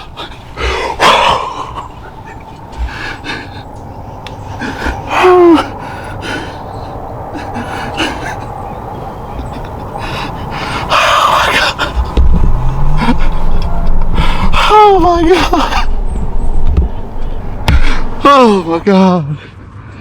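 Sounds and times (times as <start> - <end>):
person breathing hard and gasping: 4.6 - 8.8, 9.4 - 16.1, 17.2 - 18.8
person groaning: 17.9 - 18.8.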